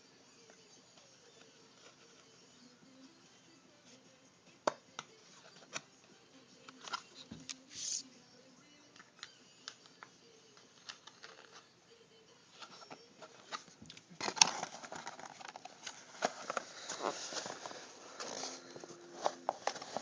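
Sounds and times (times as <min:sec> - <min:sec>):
packaging rustling: 0:12.7 - 0:20.0.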